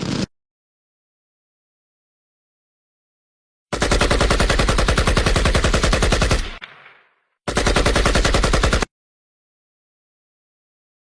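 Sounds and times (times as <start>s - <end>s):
automatic gunfire bursts: 3.7s - 6.9s, 7.5s - 8.9s.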